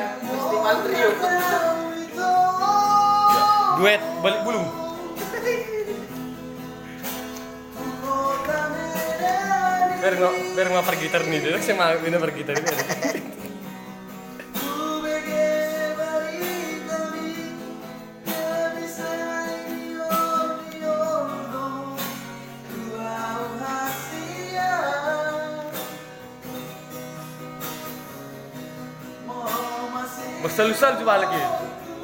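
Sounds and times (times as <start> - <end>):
person singing long notes: 0.0 - 11.6
guitar accompaniment: 0.0 - 32.0.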